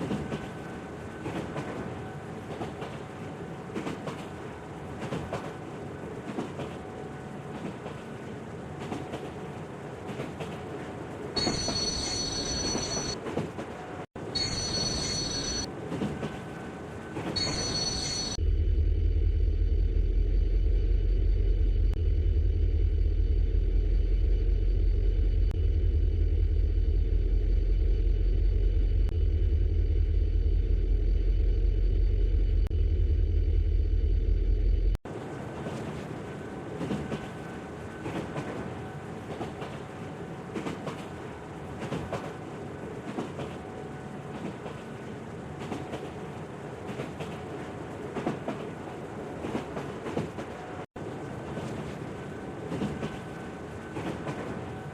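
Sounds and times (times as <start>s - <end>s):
train rattling rumble: 0.0s - 54.9s
high train squeals: 11.3s - 18.4s, 51.5s - 54.9s.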